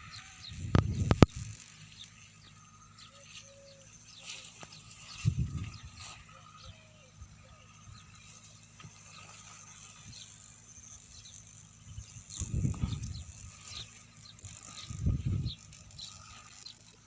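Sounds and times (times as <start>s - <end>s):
wind gusts on microphone: 0.0s - 1.4s, 5.1s - 6.2s, 11.9s - 13.6s, 14.8s - 15.7s
faint insect drone: 0.0s - 17.0s.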